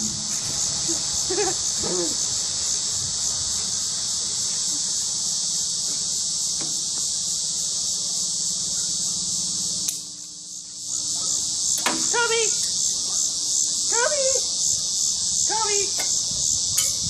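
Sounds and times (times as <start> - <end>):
high-pitched hiss: 0.0 - 17.0
sharp click: 9.8 - 10.1.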